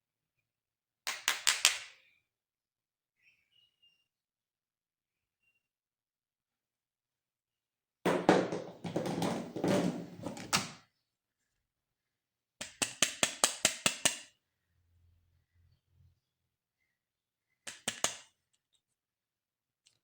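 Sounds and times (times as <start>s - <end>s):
plastic packaging rustling and knocking: 8.1s - 10.7s
sharp plastic clicks: 17.7s - 18.4s.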